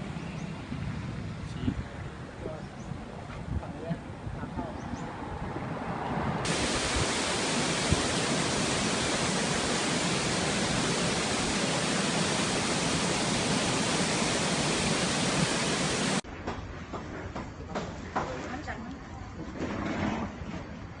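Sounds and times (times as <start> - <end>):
waterfall rushing: 6.4 - 16.2.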